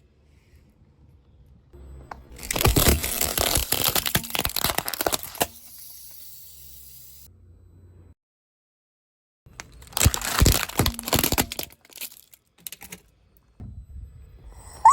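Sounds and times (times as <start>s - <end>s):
low rumble of car: 0.3s - 2.5s
tyre crushing brittle objects: 2.3s - 5.8s, 9.5s - 13.0s.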